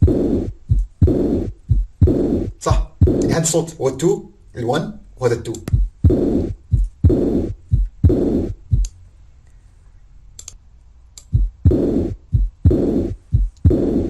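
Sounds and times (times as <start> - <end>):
heartbeat with whooshing murmur: 0.0 - 3.6, 5.6 - 9.0, 11.2 - 14.0.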